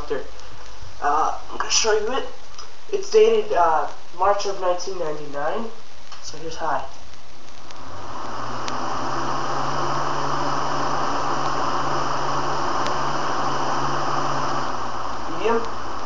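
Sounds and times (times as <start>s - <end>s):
box fan running: 7.0s - 16.0s.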